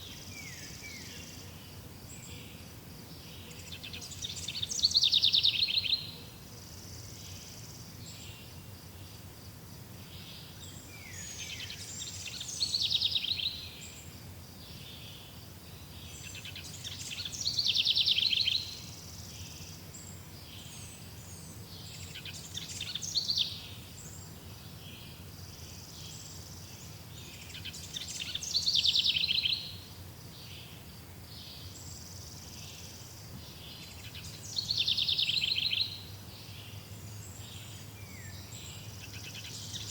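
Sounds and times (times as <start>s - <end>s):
faint bird chirps: 0.0s - 9.3s, 10.0s - 39.9s
songbird trilling song: 0.0s - 39.9s.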